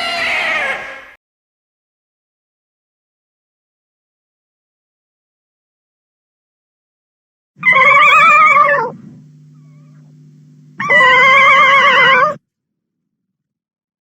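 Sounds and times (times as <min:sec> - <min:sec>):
creature crying with wavering pitch: 0:00.0 - 0:01.1, 0:07.6 - 0:09.0, 0:10.8 - 0:12.4
faint low hum: 0:07.6 - 0:12.4.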